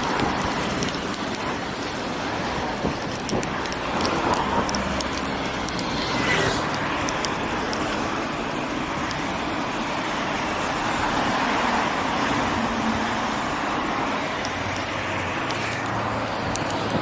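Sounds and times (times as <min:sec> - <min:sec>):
road traffic noise: 0:00.0 - 0:17.0
vehicle passing: 0:03.9 - 0:07.3.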